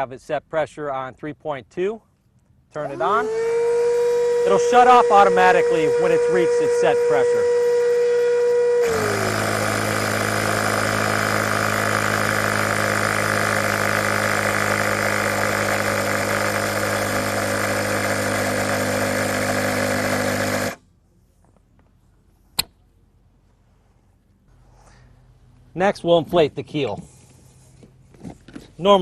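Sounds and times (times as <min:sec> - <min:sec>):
electric air pump humming: 0:02.9 - 0:20.8
sharp click: 0:22.6 - 0:22.8.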